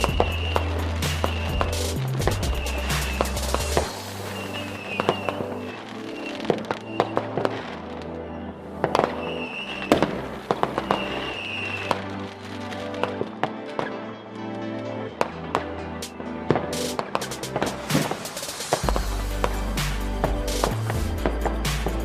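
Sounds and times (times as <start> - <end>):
firework whistles: 0.0 - 13.2, 16.8 - 19.2
fireworks bangs and crackles: 0.0 - 14.2, 15.2 - 22.0
background music with bass: 0.0 - 22.0.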